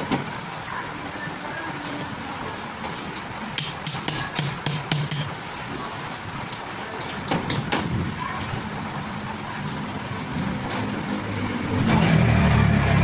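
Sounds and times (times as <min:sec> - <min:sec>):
tool tapping on metal: 0:03.6 - 0:05.4.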